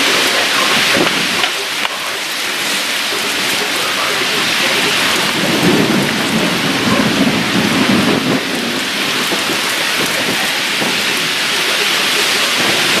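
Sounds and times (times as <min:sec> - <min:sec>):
heavy rain falling: 0:00.0 - 0:13.0
low rumble of thunder: 0:03.0 - 0:13.0.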